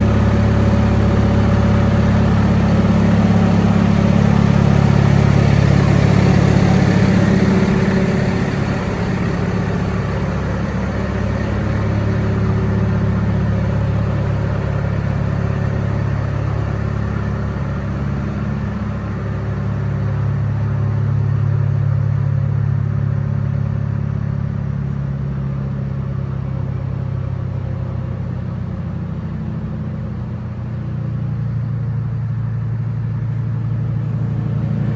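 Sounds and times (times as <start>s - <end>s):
tractor diesel engine running: 0.0s - 11.1s.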